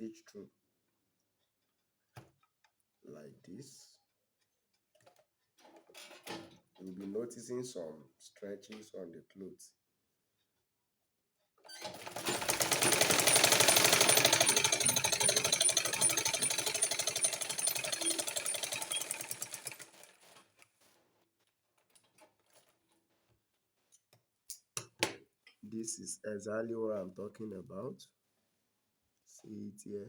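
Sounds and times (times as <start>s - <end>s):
sewing machine clattering: 11.7s - 20.6s.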